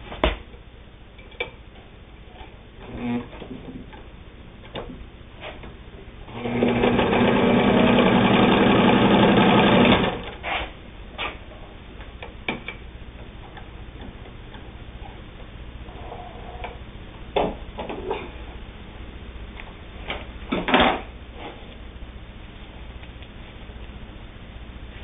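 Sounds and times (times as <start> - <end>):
sewing machine stitching leather: 6.3 - 10.3.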